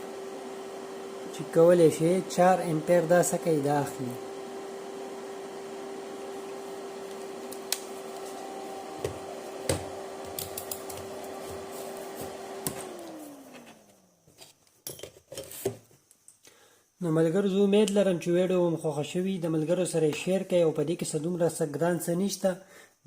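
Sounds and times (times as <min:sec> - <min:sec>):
battery charger humming: 0:00.0 - 0:14.2.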